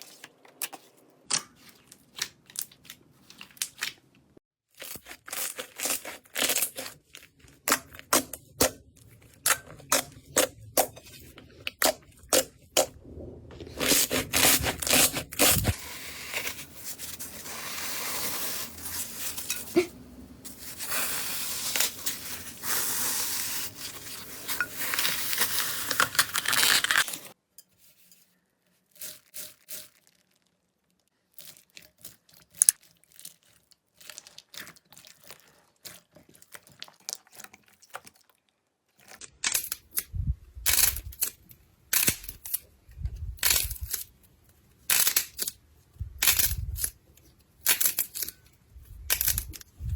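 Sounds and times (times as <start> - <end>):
slime stretching and tearing: 4.7 - 8.8, 13.7 - 19.4, 20.6 - 27.4, 29.0 - 40.0.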